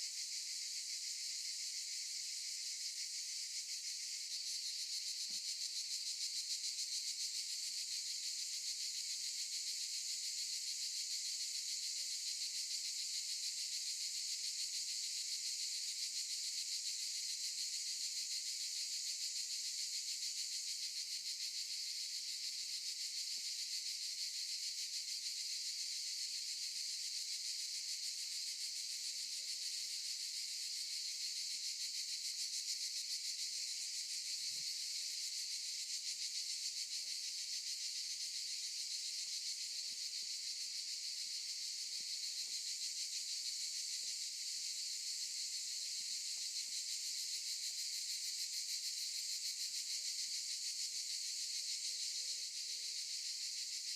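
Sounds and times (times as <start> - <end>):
cicadas buzzing: 30.0 - 49.6, 50.7 - 53.7.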